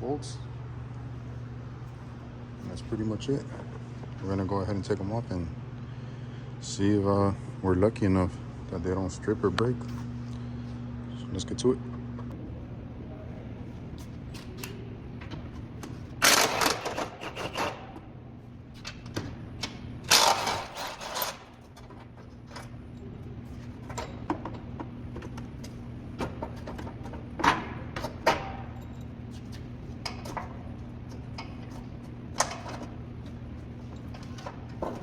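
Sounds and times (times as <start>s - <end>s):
steady low hum: 0.0s - 35.0s
wrench rattling: 20.1s - 22.7s.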